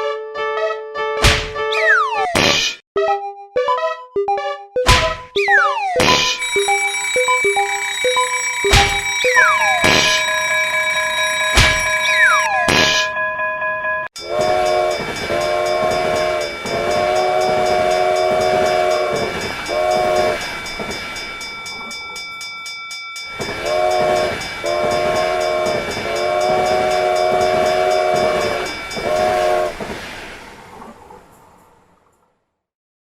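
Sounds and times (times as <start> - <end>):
train horn blasts: 6.4 - 13.0, 14.2 - 20.9, 23.4 - 30.0
train running noise: 6.4 - 13.1, 14.2 - 32.3.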